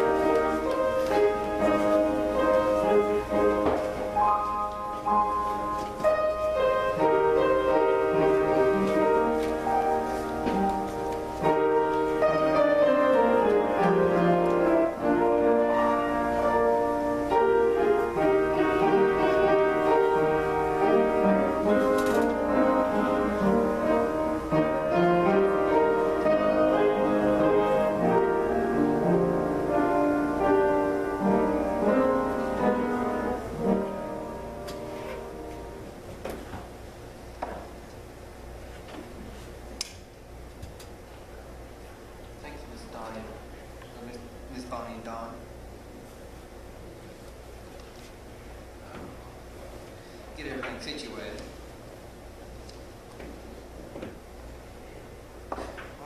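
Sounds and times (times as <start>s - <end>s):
piano: 0.0s - 39.7s.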